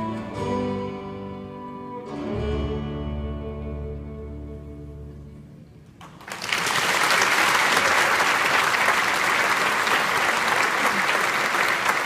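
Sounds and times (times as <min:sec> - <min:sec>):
congregation clapping: 0:06.0 - 0:12.0.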